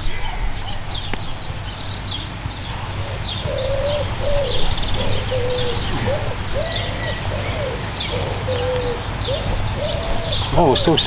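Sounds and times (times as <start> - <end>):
small birds chirping: 0.0 - 11.0
pigeon cooing: 2.9 - 11.0.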